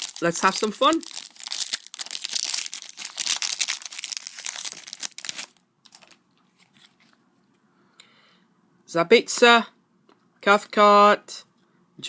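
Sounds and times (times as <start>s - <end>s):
foil wrapper tearing and crinkling: 0.0s - 6.2s.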